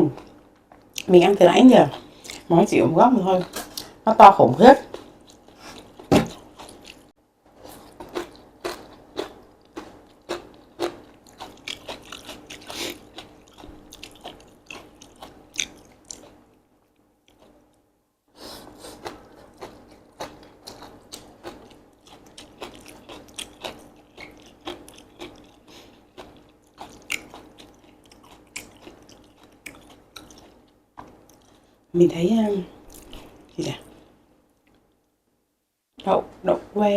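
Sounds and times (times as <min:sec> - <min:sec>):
person chewing with wet smacks: 0:00.0 - 0:01.1, 0:04.9 - 0:07.1, 0:07.7 - 0:17.6, 0:18.9 - 0:31.6.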